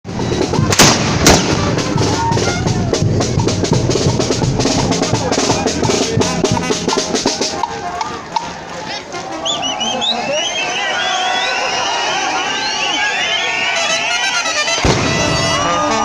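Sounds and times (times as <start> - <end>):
loud music with drums and bass: 0.1 - 7.6
sharp cracks: 0.7 - 2.0.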